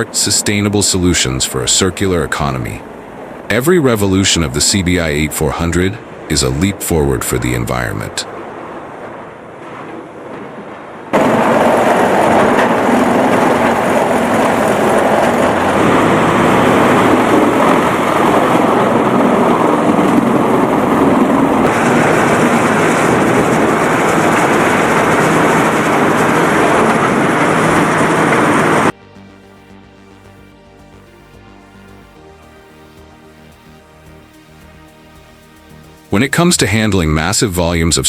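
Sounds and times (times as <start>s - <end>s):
industrial grinder shredding wood: 11.2s - 28.9s.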